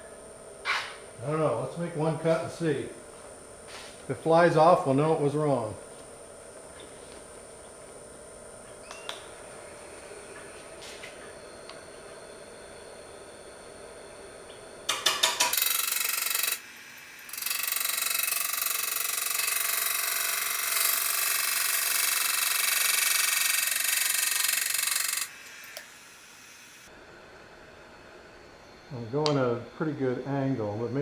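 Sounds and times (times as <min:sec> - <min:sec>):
lathe tool screeching cut: 0:15.6 - 0:16.6, 0:17.2 - 0:26.7
lathe motor humming: 0:15.6 - 0:26.8.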